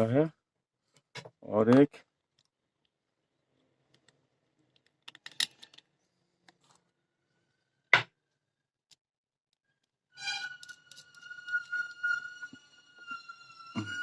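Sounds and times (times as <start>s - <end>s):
metal clicks of nut and bolt: 3.9s - 5.9s.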